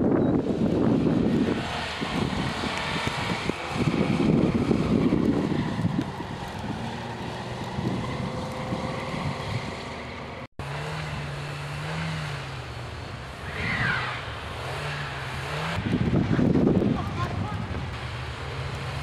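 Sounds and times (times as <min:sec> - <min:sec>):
wind buffeting microphone: 0:00.0 - 0:10.5, 0:15.5 - 0:18.0.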